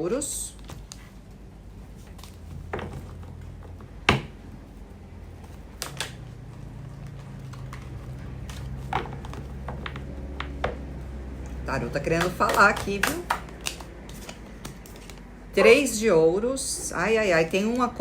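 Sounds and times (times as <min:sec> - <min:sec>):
low steady hum: 0:00.0 - 0:18.0
cards clicking and tapping on table: 0:05.4 - 0:06.2, 0:07.1 - 0:11.0, 0:12.1 - 0:15.3.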